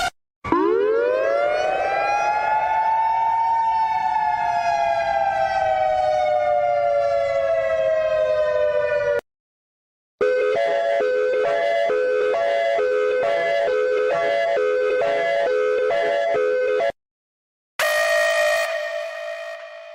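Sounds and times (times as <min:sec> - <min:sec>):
warning siren wailing: 0:00.0 - 0:09.2, 0:10.2 - 0:17.0, 0:17.8 - 0:19.9.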